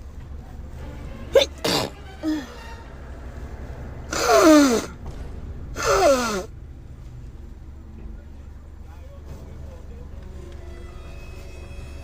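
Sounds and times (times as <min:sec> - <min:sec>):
woman sneezing: 0:01.4 - 0:02.5, 0:04.1 - 0:05.0, 0:05.8 - 0:06.5.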